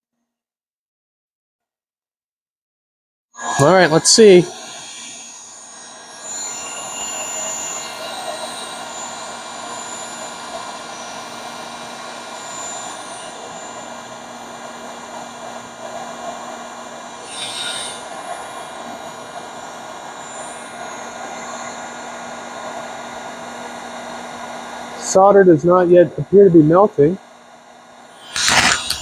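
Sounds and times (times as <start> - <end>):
heat gun fan blowing: 3.4 - 29.0
brief bright hiss: 28.2 - 29.0.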